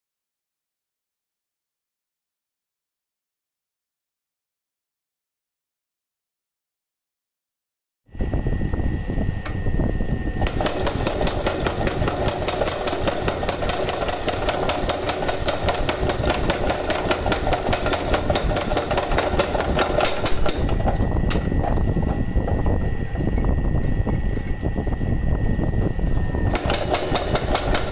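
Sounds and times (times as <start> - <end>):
motor running steadily: 8.1 - 27.9
power hammer pounding: 10.4 - 22.3, 26.5 - 27.9.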